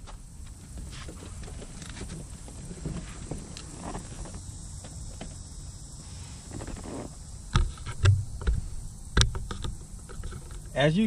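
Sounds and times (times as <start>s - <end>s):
dull thump: 7.5s - 10.4s.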